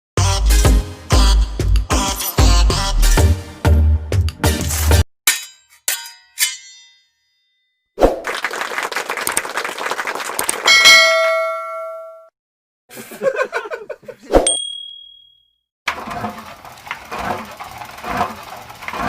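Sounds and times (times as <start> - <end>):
bright bell-like ding: 10.7 - 12.3, 14.4 - 15.5
short high ding: 10.7 - 12.3, 14.4 - 15.6
ringing click: 14.5 - 15.5
dense clattering rattle: 15.9 - 19.0.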